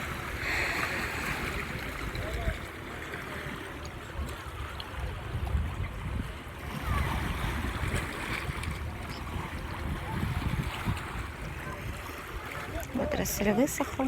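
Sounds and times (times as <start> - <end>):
sea waves washing ashore: 0.0 - 14.0
wind buffeting microphone: 4.0 - 14.0.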